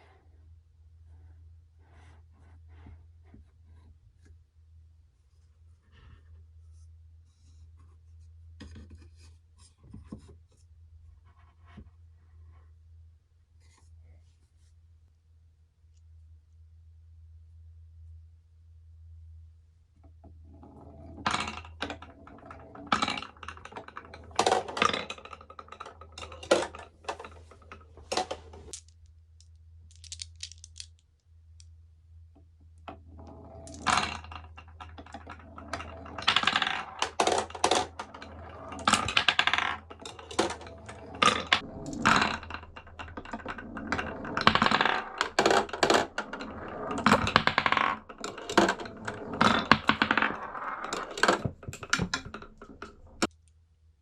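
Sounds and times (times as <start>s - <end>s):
glass marbles rolling and clicking: 33.6s - 53.3s.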